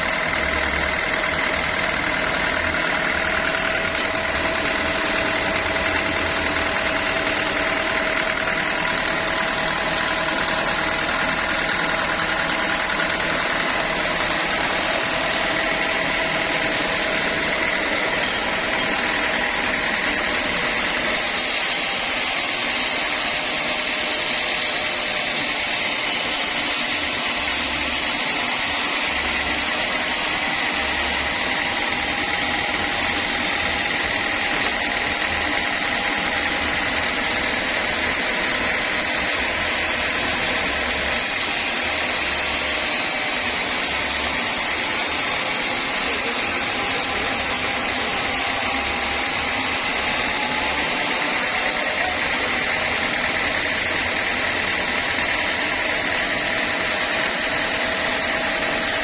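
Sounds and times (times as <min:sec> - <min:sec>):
sawmill machinery droning: 0:00.0 - 0:59.0.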